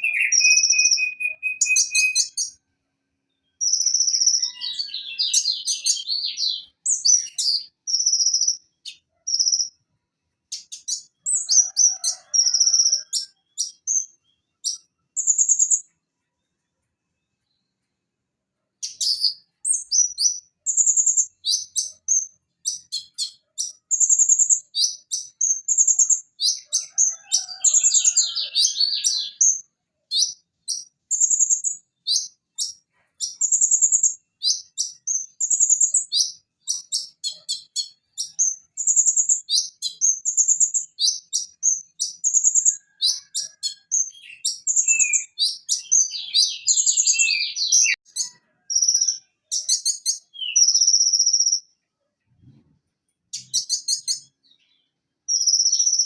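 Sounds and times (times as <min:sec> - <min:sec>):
bird singing high sharp chirps: 0:00.0 - 0:02.6, 0:03.6 - 0:09.7, 0:10.5 - 0:15.9, 0:18.8 - 0:26.7, 0:44.0 - 0:51.7, 0:53.4 - 0:54.7, 0:55.3 - 0:56.0
scratchy bird trill: 0:00.0 - 0:02.6, 0:18.8 - 0:51.6.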